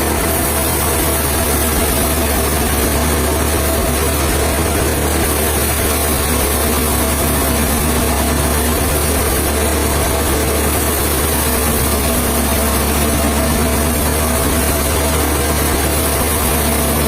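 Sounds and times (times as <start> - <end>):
engine running steadily: 0.0 - 17.0.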